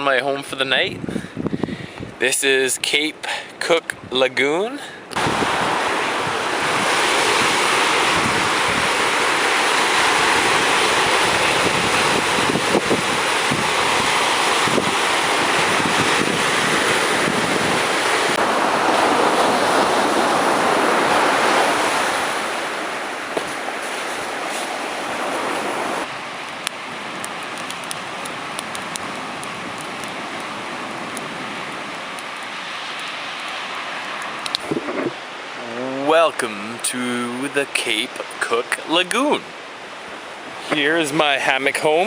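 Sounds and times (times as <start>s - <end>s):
ocean surf washing on shore: 0.0s - 42.0s
wind buffeting microphone: 0.8s - 2.2s, 5.1s - 26.2s, 34.5s - 35.2s.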